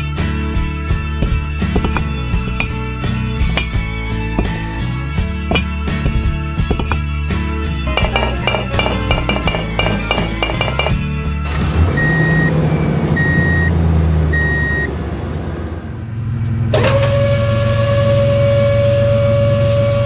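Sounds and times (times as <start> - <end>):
background music: 0.0 - 11.9
rapid clinks: 7.9 - 11.0.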